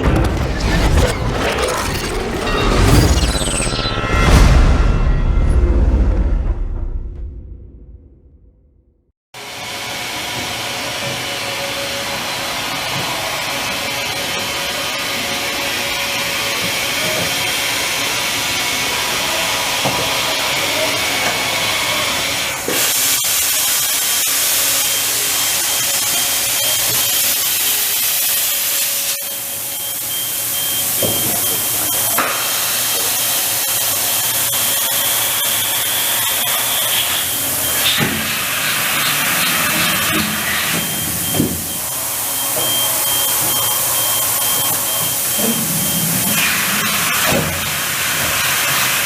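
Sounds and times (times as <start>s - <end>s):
machine running with loud hissing: 0.0s - 4.0s, 9.8s - 49.0s
thin high whine: 0.0s - 6.0s, 33.9s - 47.7s.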